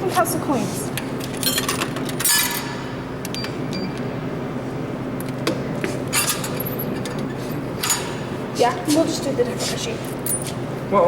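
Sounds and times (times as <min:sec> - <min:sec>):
steady low hum: 0:00.0 - 0:11.0
coins clinking into coin slot: 0:01.2 - 0:02.8, 0:06.1 - 0:07.2, 0:07.8 - 0:08.2.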